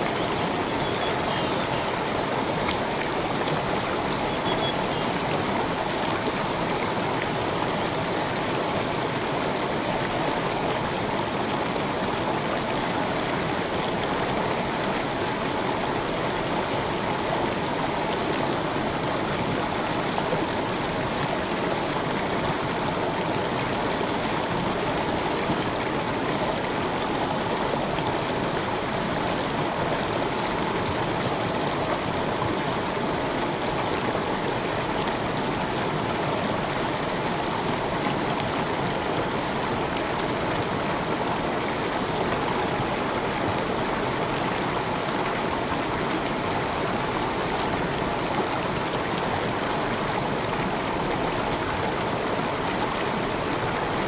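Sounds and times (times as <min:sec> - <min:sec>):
stream flowing over stones: 0:00.0 - 0:54.0.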